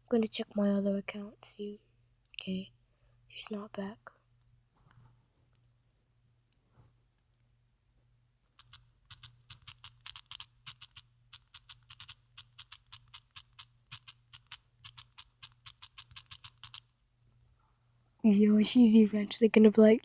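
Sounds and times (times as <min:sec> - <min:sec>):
faint low hum: 0:00.0 - 0:20.0
keyboard typing clicks: 0:08.6 - 0:16.8.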